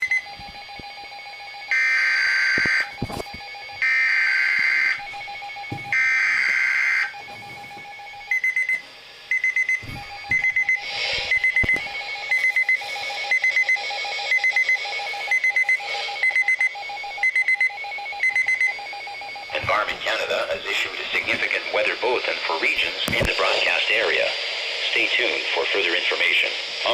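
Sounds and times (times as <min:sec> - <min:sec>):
alarm of short beeps: 0:00.0 - 0:00.4, 0:01.6 - 0:20.9.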